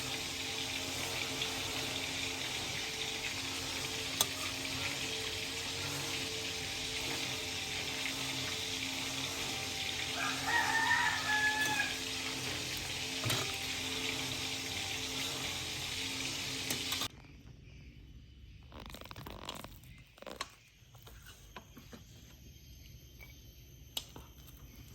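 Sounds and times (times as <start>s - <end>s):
rooster crowing: 9.5s - 14.0s.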